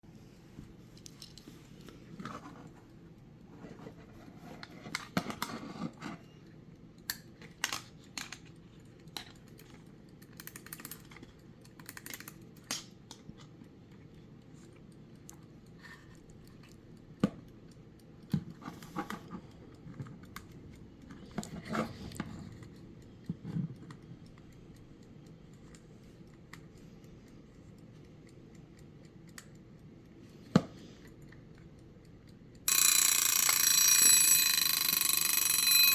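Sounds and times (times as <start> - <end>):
alarm clock clicks and taps: 32.6 - 35.9.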